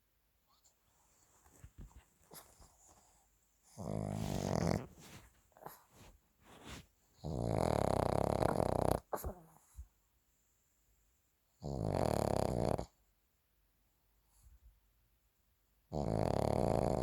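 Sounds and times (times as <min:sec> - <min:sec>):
dog snoring: 0:03.7 - 0:05.8, 0:06.6 - 0:09.6, 0:11.6 - 0:13.0, 0:15.9 - 0:17.0.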